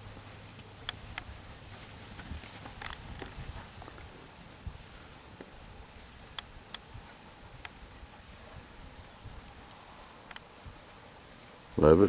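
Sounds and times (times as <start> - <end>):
crickets chirping: 0.0 - 12.0
faint clicks: 10.2 - 10.5.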